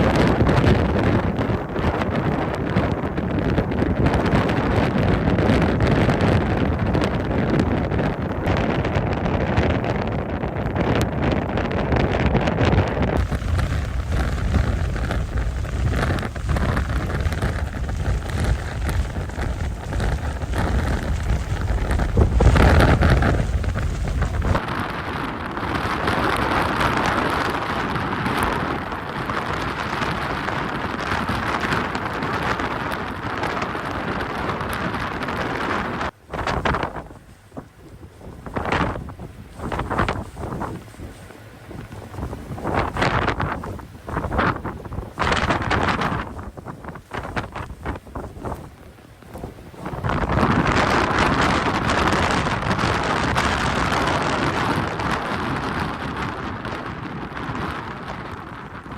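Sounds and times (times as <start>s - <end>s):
blizzard wind buffeting microphone: 0.0s - 58.9s
blowing snow hissing: 13.2s - 24.6s, 36.4s - 53.1s.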